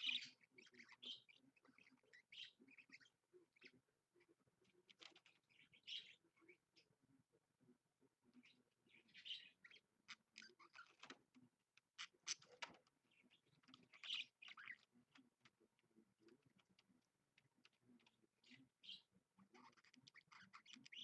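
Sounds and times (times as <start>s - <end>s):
budgerigar chattering: 0.0s - 3.7s, 5.1s - 6.2s, 8.4s - 11.0s, 13.1s - 14.9s, 18.0s - 21.0s.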